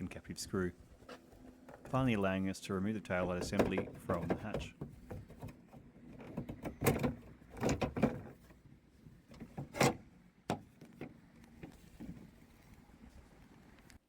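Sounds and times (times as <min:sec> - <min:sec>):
plastic knocks and rattles: 0:03.3 - 0:08.6.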